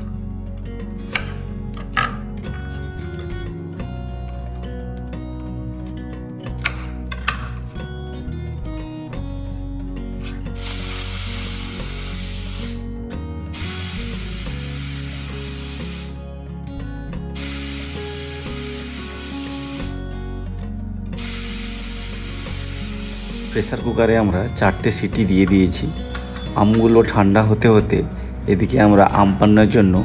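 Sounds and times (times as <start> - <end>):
pressure cooker whistling: 10.5 - 16.3, 17.3 - 20.2, 21.2 - 27.7.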